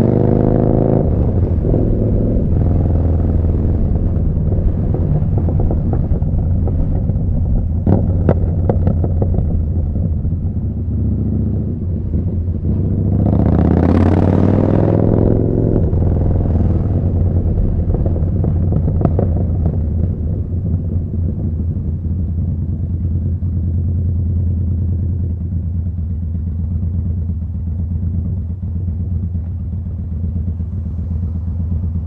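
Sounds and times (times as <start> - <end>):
motorcycle engine rumble: 0.0 - 32.0.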